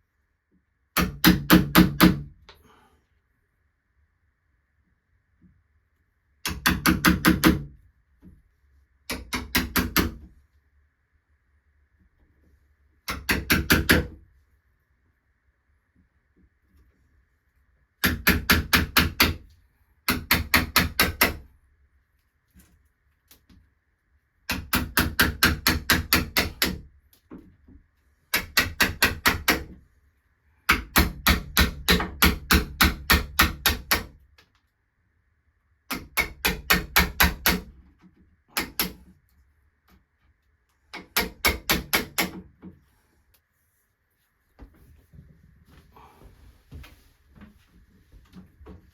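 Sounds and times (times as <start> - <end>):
hammer tapping wood chisel: 9.1 - 10.3, 13.1 - 14.2, 18.0 - 19.4, 20.1 - 21.4, 24.5 - 27.4, 28.3 - 29.8, 30.7 - 34.1, 35.9 - 37.8, 38.6 - 39.0, 40.9 - 42.7.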